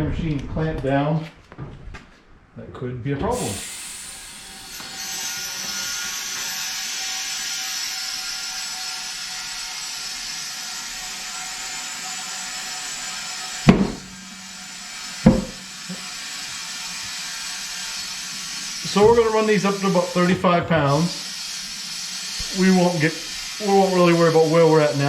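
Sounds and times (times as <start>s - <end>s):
compressed air hissing: 3.4s - 4.7s, 13.7s - 14.1s, 15.3s - 15.6s.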